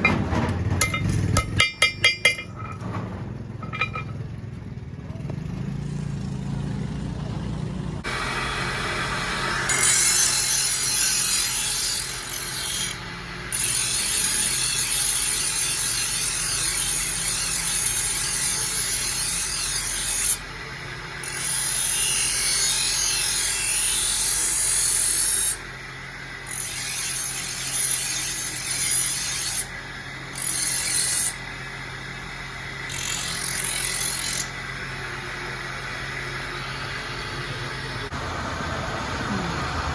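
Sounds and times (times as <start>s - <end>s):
sickle blade grinding: 9.7s - 20.4s, 26.4s - 31.5s, 32.8s - 34.6s
machine hum: 34.1s - 39.9s.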